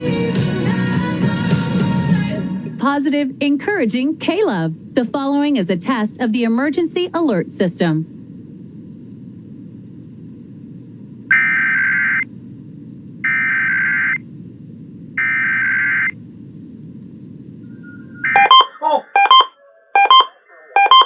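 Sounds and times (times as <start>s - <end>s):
low background hum: 0.9s - 21.0s
buzzy digital data tones: 11.3s - 12.3s, 13.2s - 14.2s, 15.2s - 16.2s, 17.8s - 21.0s.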